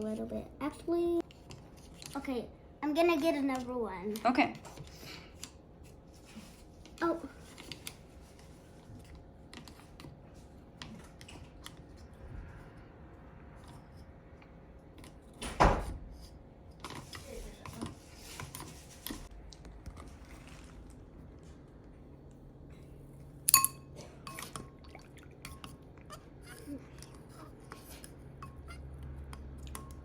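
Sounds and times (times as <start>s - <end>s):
sharp ringing clink: 23.5s - 23.9s.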